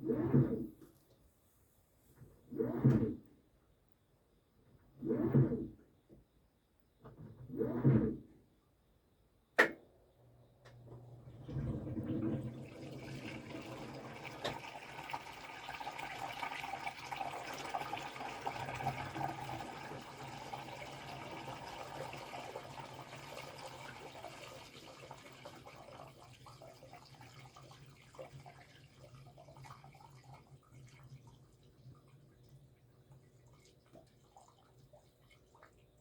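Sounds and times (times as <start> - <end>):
low electrical hum: 8.6 - 36.0
water running in washing machine: 10.7 - 36.0.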